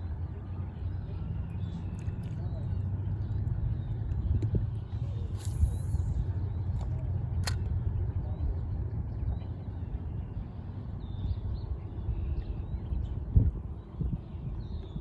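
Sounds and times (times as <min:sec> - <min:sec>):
steady low rumble: 0:00.0 - 0:15.0
sharp click: 0:07.4 - 0:07.7.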